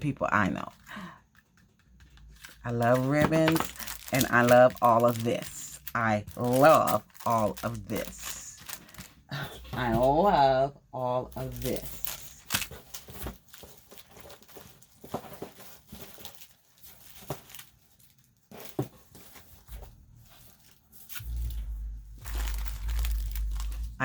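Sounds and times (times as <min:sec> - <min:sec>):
packaging rustling and crinkling: 0:00.6 - 0:09.3, 0:11.4 - 0:24.0
low rumble of handling noise: 0:19.2 - 0:24.0.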